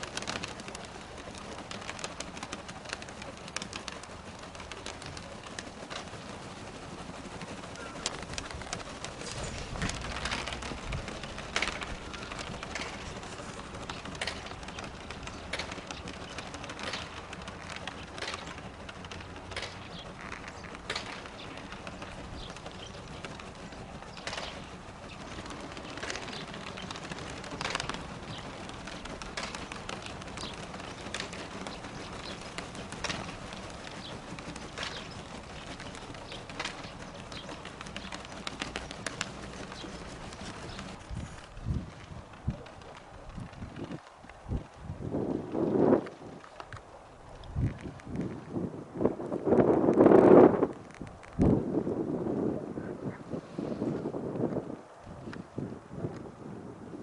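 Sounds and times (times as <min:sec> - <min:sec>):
pigeons cooing: 0:07.6 - 0:41.0.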